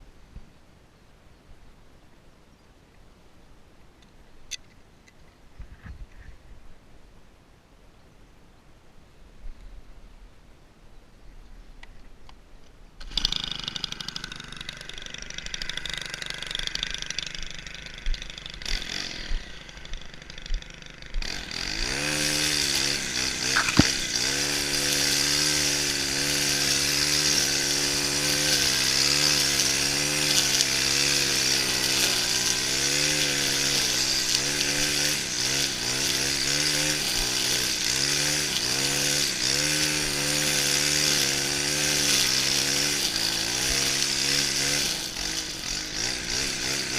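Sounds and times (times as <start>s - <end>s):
brushcutter engine revving: 13.0s - 46.9s.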